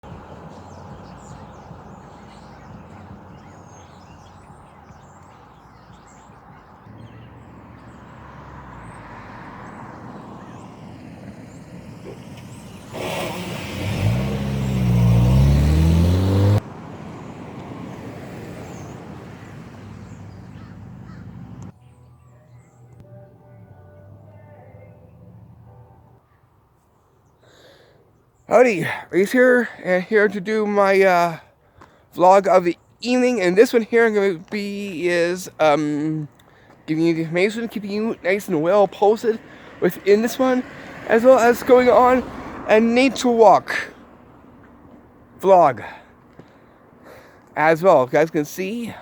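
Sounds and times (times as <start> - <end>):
road traffic noise: 0.0 - 49.0
vehicle engine accelerating: 6.9 - 21.7, 39.9 - 43.2.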